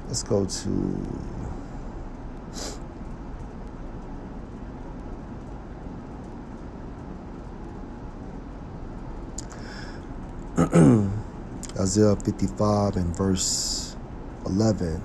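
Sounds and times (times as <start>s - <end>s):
low background rumble: 0.0s - 15.0s
short hissing: 2.5s - 2.8s.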